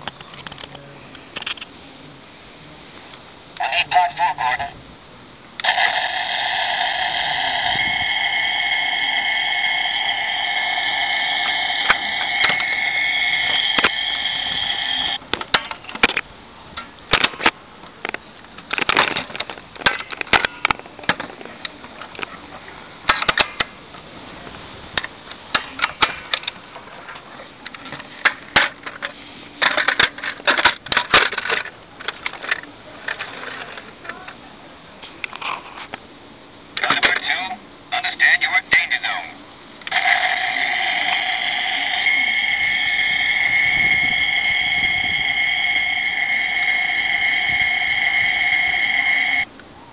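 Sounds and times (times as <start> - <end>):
toy electronic whine: 5.6 - 15.2, 39.9 - 49.5.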